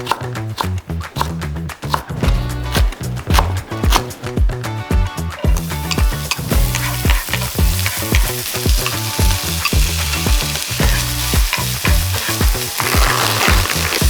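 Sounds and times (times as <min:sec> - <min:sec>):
background music with steady beat: 0:00.0 - 0:14.0
food sizzling in a frying pan: 0:05.6 - 0:14.0.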